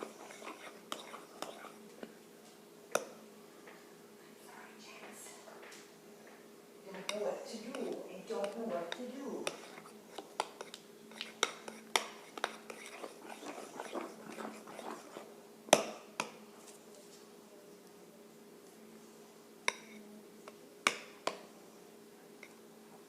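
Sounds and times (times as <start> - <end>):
spoon scraping mixing bowl: 0.0 - 2.1, 7.0 - 16.4, 19.7 - 20.0.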